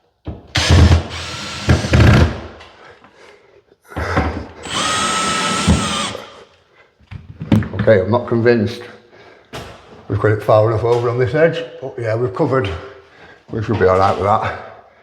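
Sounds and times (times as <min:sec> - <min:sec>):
cordless drill whine: 0:00.6 - 0:02.1, 0:04.6 - 0:06.4.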